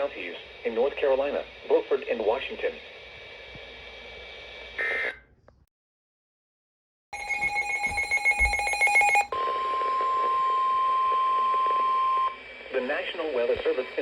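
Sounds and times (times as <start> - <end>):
radio hiss: 0.0 - 5.2, 12.3 - 14.0
steady warning alarm tone: 7.2 - 12.4.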